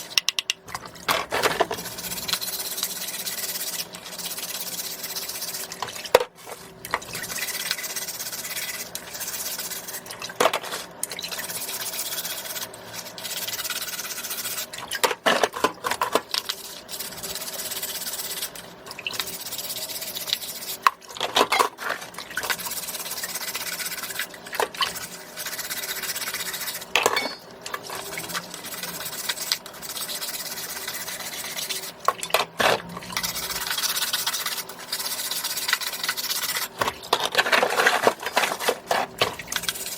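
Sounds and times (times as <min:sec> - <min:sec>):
shells knocking and clicking: 0:00.2 - 0:00.6.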